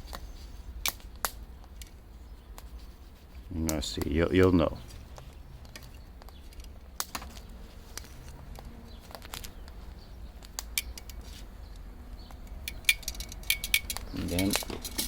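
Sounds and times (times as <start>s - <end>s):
light clicks and ticks at grill: 3.6s - 4.3s.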